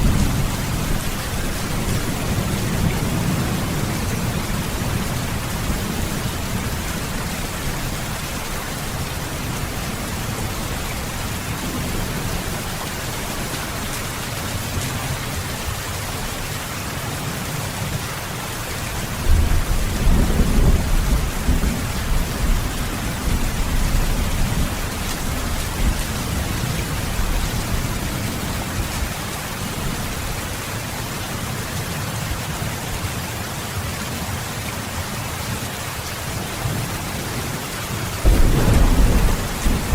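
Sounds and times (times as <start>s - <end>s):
low thunder rumble: 0.0s - 8.0s, 19.3s - 28.4s, 38.2s - 39.9s
steady rain: 0.0s - 39.9s.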